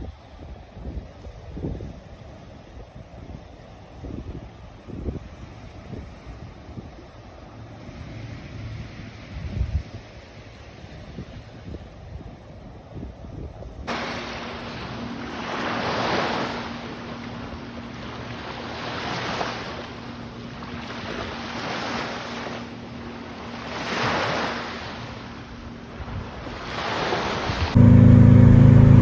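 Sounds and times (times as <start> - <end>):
wind buffeting microphone: 0.0 - 29.0
ocean surf washing onto beach: 13.8 - 29.0
faint steady hum: 13.9 - 26.7.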